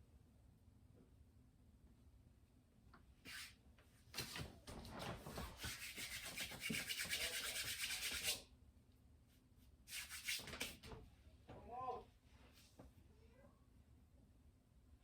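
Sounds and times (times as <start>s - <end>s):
fast scratchy rubbing: 5.5s - 8.4s, 9.9s - 10.7s.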